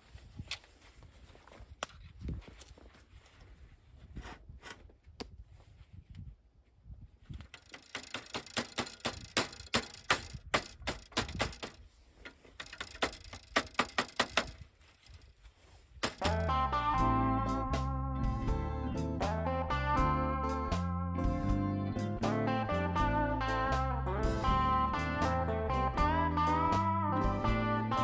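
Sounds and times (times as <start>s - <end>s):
sharp mechanical clicks and knocks: 7.4s - 14.6s, 16.0s - 16.5s
guitar music: 16.2s - 28.0s.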